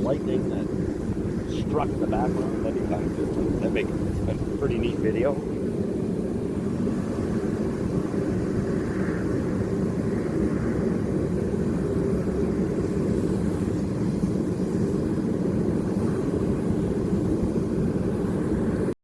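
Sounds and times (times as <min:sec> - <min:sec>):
forge roaring: 0:00.0 - 0:05.6.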